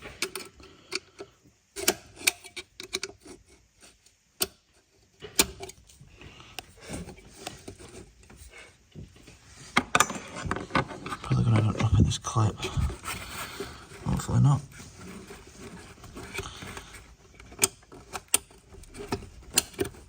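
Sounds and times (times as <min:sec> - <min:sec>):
handling rustle: 0:06.6 - 0:20.0.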